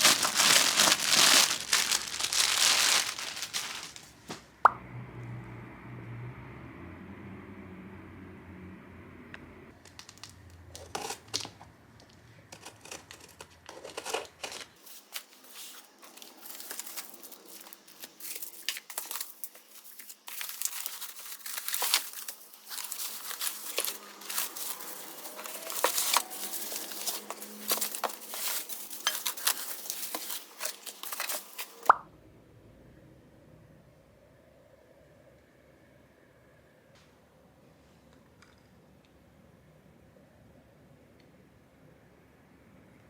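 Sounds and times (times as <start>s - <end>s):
packaging tearing: 0.0s - 4.2s, 12.6s - 31.9s
packaging crinkling: 0.0s - 4.4s, 9.8s - 11.5s, 12.8s - 31.9s.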